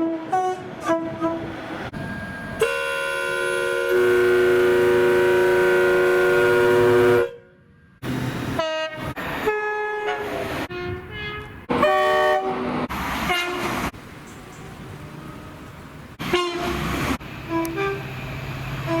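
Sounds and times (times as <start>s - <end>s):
short two-tone train horns: 0.0s - 1.5s, 2.6s - 7.6s, 8.6s - 12.7s, 13.3s - 13.7s, 16.2s - 16.9s, 17.5s - 18.1s
train horn blast: 0.0s - 1.6s, 2.6s - 7.6s, 8.6s - 13.8s, 16.2s - 16.9s, 17.5s - 18.1s.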